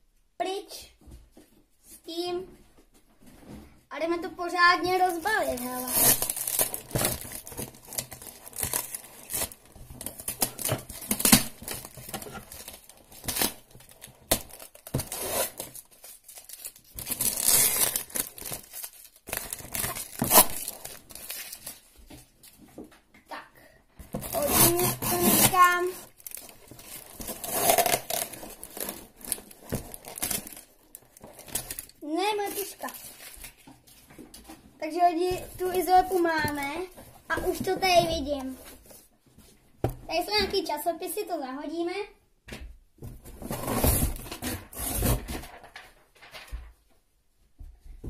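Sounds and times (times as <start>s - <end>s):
packaging crinkling: 4.9s - 22.0s, 24.1s - 33.6s
adhesive tape ripping: 5.2s - 13.6s, 14.3s - 21.6s, 24.2s - 29.4s.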